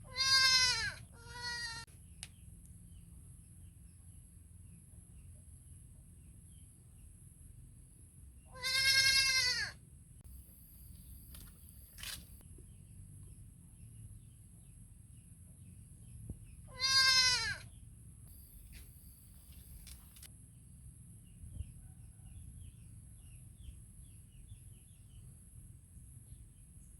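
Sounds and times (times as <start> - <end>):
baby goat bleating: 0.0 - 1.9, 8.5 - 9.8, 16.7 - 17.7.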